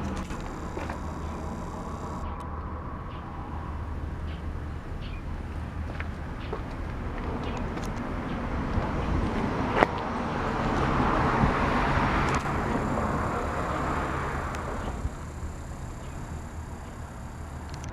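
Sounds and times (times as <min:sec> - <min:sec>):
car passing by: 0:08.2 - 0:17.9
sharp click: 0:15.8 - 0:17.9.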